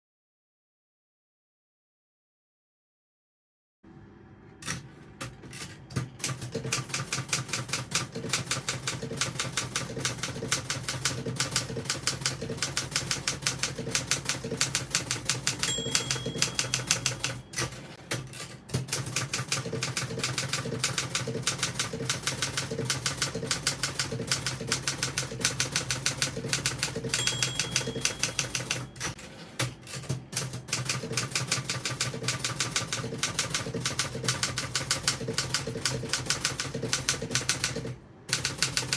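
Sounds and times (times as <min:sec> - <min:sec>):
typewriter carriage return: 0:04.6 - 0:38.9
typewriter keys clacking: 0:04.6 - 0:38.9
typewriter margin bell ringing: 0:15.2 - 0:18.0, 0:26.7 - 0:29.3.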